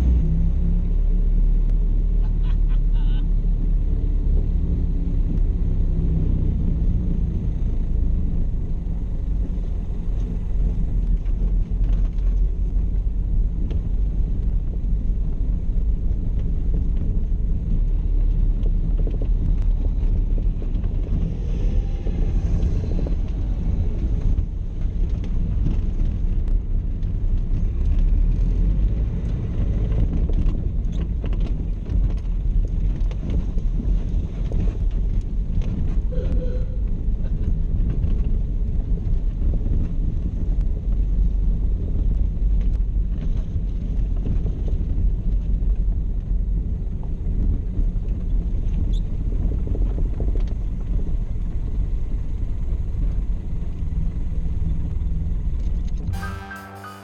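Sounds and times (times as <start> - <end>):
car engine rumbling: 0.0 - 56.5
brief whine: 56.2 - 57.0.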